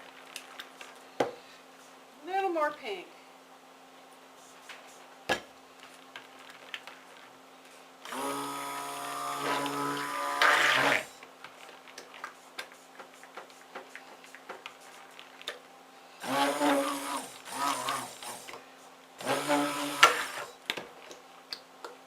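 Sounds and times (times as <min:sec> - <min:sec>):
stick blender motor hum: 0:08.0 - 0:11.1, 0:16.2 - 0:18.6, 0:19.2 - 0:20.5.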